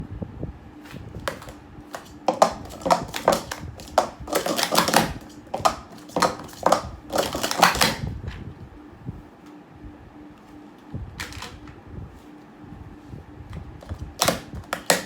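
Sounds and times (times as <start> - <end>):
plastic cups clattering: 1.2 - 8.1, 13.8 - 15.0.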